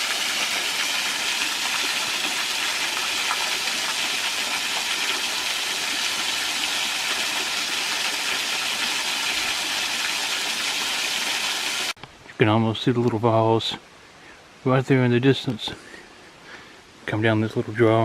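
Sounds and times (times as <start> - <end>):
small waterfall splashing: 0.0 - 12.0.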